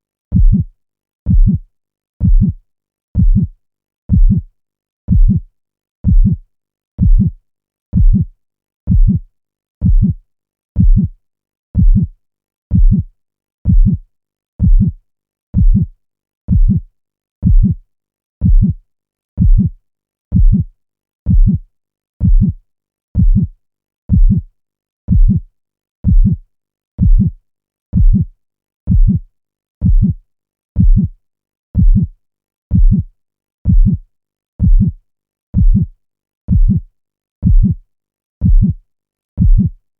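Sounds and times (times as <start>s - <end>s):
heartbeat thumps: 0.3s - 0.7s, 1.3s - 1.6s, 2.2s - 2.6s, 3.2s - 3.5s, 4.1s - 4.4s, 5.1s - 5.4s, 6.0s - 6.4s, 7.0s - 7.4s, 8.0s - 8.3s, 8.9s - 9.2s, 9.8s - 10.2s, 10.8s - 11.1s, 11.8s - 12.1s, 12.7s - 13.1s, 13.7s - 14.0s, 14.6s - 15.0s, 15.6s - 15.9s, 16.5s - 16.8s, 17.4s - 17.8s, 18.4s - 18.8s, 19.4s - 19.7s, 20.3s - 20.7s, 21.3s - 21.6s, 22.2s - 22.6s, 23.2s - 23.5s, 24.1s - 24.4s, 25.1s - 25.4s, 26.0s - 26.4s, 27.0s - 27.3s, 28.0s - 28.2s, 28.9s - 29.2s, 29.8s - 30.2s, 30.8s - 31.1s, 31.8s - 32.1s, 32.7s - 33.1s, 33.7s - 34.0s, 34.6s - 35.0s, 35.6s - 35.9s, 36.5s - 36.8s, 37.4s - 37.8s, 38.4s - 38.8s, 39.4s - 39.7s.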